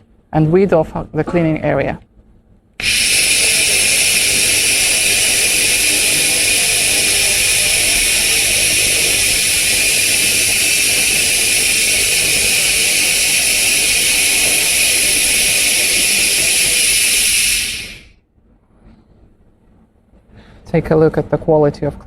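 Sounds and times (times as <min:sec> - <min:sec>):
laser cleaning high-pitched hiss: 0:02.8 - 0:18.2.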